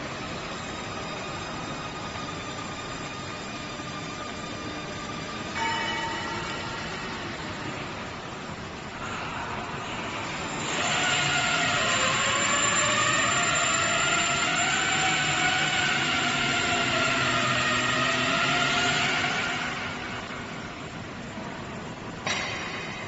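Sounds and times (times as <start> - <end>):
router motor whine: 10.2 - 20.7.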